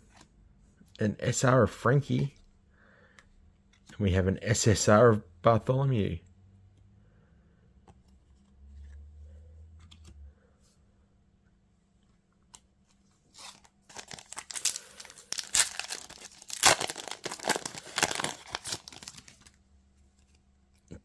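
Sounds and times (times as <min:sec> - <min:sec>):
foil wrapper tearing and crinkling: 0:13.4 - 0:19.5.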